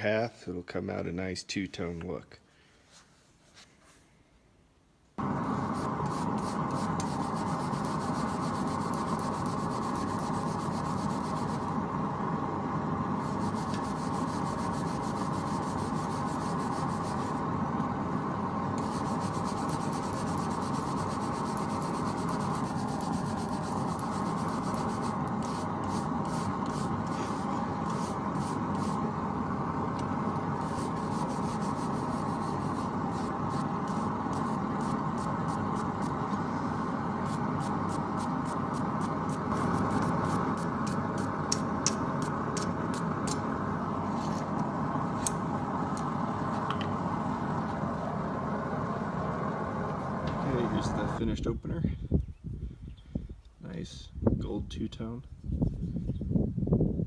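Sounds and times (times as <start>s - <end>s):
wire brush scrubbing steel: 5.4s - 11.8s, 13.2s - 17.4s, 18.8s - 29.0s, 30.5s - 36.2s, 37.2s - 43.4s.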